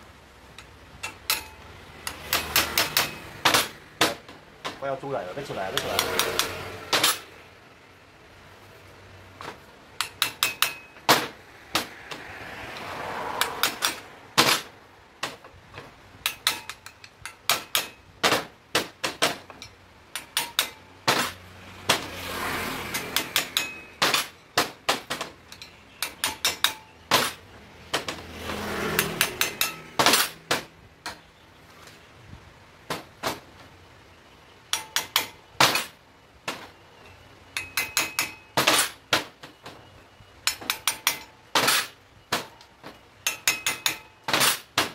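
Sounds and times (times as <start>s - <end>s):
hammer striking metal punch: 1.0s - 4.8s, 5.8s - 7.3s, 10.0s - 12.0s, 16.2s - 22.1s, 22.8s - 28.2s, 28.9s - 31.2s, 34.7s - 36.6s, 37.6s - 39.3s, 40.4s - 42.6s, 43.2s - 44.9s.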